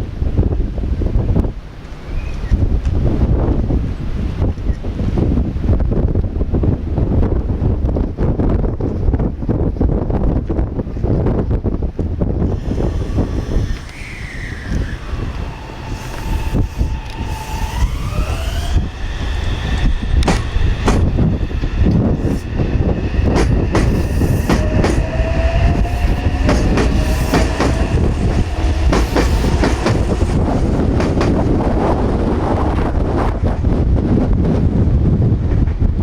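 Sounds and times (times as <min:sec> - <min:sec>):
wind buffeting microphone: 0:00.0 - 0:36.0
heavy low rumble: 0:05.3 - 0:36.0
wheels clacking on track: 0:12.4 - 0:32.2
train motors whining: 0:12.4 - 0:32.8.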